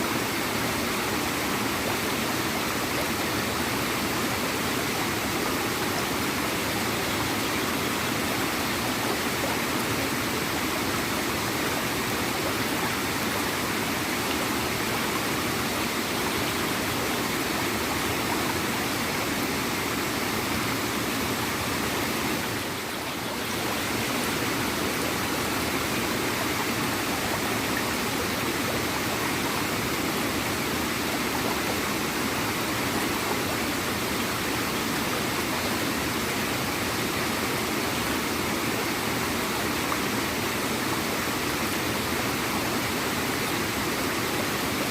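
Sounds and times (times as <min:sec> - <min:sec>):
water flowing and gurgling: 0:00.0 - 0:44.9.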